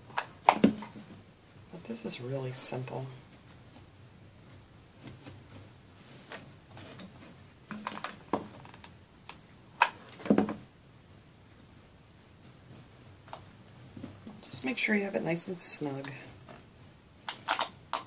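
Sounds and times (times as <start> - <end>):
hands tapping and rustling rope: 3.2 - 10.7, 12.4 - 14.7.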